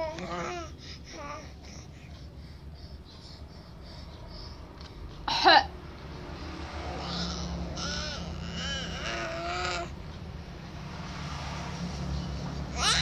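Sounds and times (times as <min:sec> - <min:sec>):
baby babbling: 0:00.0 - 0:02.2, 0:07.0 - 0:10.0, 0:12.7 - 0:13.0
woman coughing: 0:05.3 - 0:05.7.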